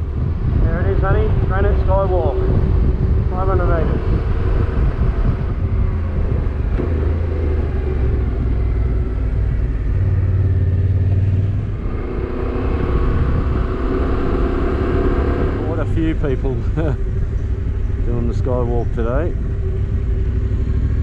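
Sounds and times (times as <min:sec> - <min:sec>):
motorcycle engine revving: 0:00.0 - 0:21.0
road noise: 0:00.0 - 0:21.0.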